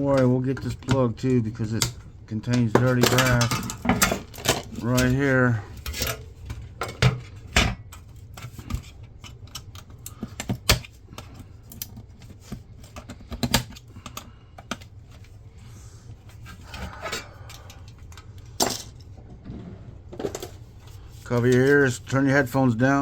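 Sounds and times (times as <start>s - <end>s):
small parts and tools clattering: 0.1s - 14.8s, 16.8s - 19.2s, 20.1s - 21.8s.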